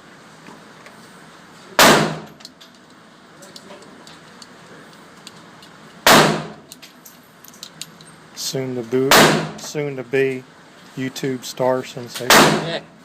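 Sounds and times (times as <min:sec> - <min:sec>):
pistol shots: 0:01.8 - 0:02.3, 0:06.0 - 0:06.6, 0:09.1 - 0:09.6, 0:12.3 - 0:12.7.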